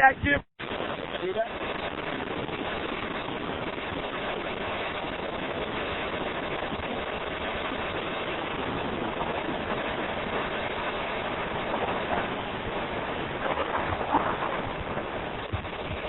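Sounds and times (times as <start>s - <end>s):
strong wind blowing: 0.0s - 16.0s.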